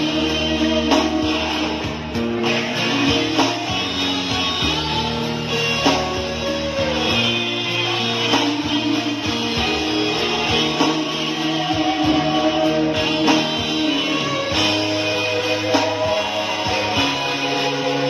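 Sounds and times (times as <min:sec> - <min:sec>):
guitar-led pop music with beat: 0:00.0 - 0:18.0.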